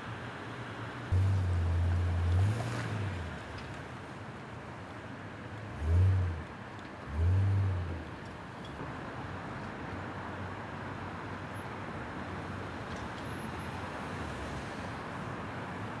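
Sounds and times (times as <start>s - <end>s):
low engine hum: 1.1s - 3.9s.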